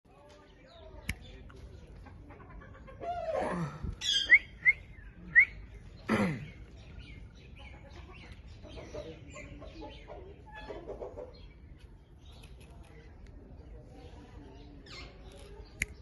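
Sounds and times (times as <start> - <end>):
parrot calling and chirping: 4.0 - 4.6.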